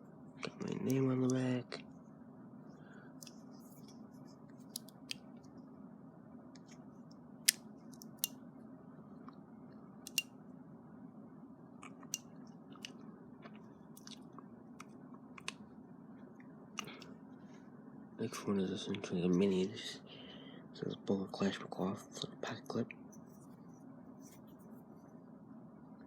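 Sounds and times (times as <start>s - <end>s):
steady low hum: 0.0s - 26.0s
knife clicks and taps: 10.1s - 10.3s.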